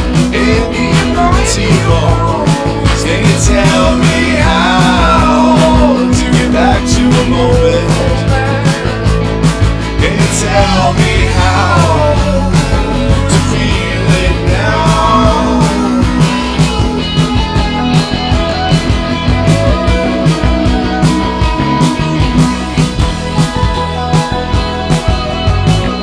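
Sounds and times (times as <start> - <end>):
person singing: 0.0 - 9.0, 10.0 - 17.6
rock band playing: 0.0 - 26.0.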